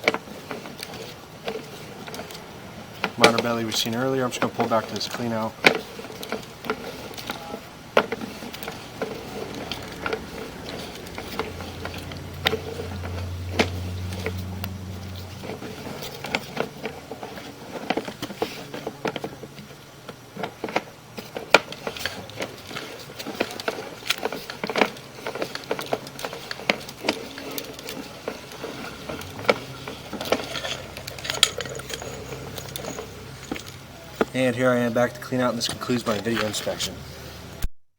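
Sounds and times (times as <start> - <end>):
cable clicking and rattling: 0.0 - 34.5
low hum: 21.8 - 35.9.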